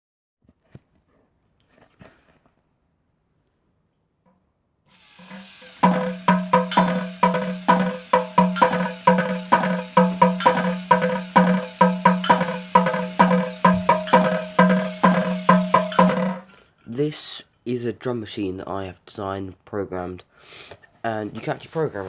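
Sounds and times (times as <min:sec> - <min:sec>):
clicky drum machine beat: 0:05.2 - 0:16.5.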